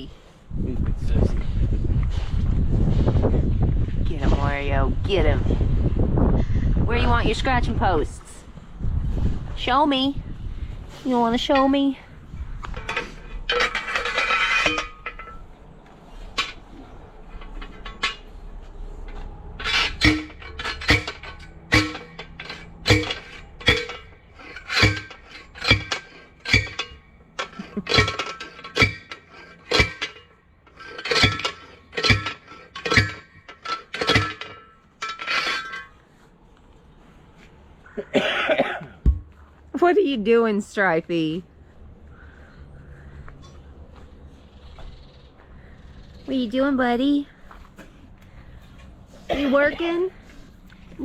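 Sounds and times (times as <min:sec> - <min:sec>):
post driver metal clangs: 0:12.6 - 0:15.6, 0:16.3 - 0:18.4, 0:19.1 - 0:36.0.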